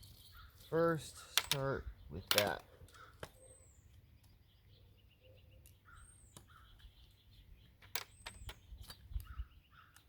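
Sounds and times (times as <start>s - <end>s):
small bird chirping: 0.0s - 10.0s
distant crow cawing: 2.8s - 3.3s.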